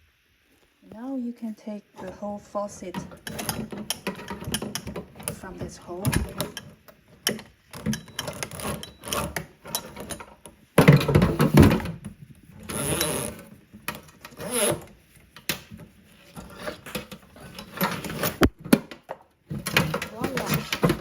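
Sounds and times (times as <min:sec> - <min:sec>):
metal faucet scraping and clattering: 0:02.9 - 0:10.3.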